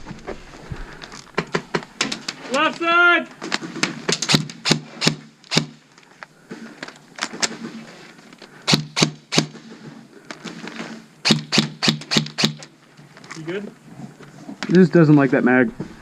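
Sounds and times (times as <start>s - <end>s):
airsoft guns firing: 4.0s - 5.8s, 8.6s - 9.6s, 11.2s - 12.6s.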